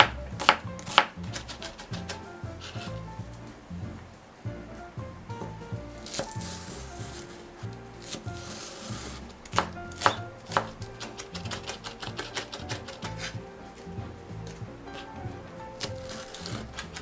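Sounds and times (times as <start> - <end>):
knife chopping on cutting board: 0.0 - 2.9, 8.0 - 13.4
soft background music: 0.0 - 17.0.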